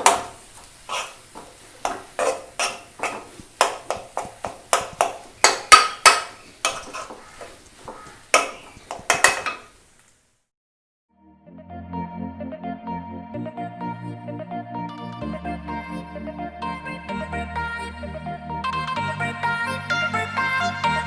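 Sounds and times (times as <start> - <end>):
metal spoon scraping a pan: 0.0 - 9.8.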